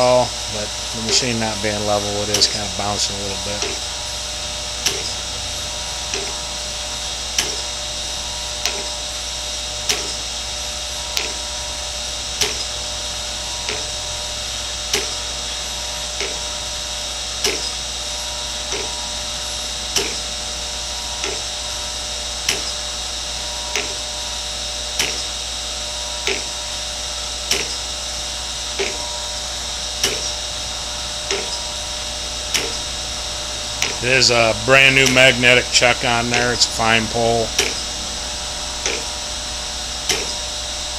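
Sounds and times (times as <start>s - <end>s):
grinder motor hum: 0.0s - 40.9s.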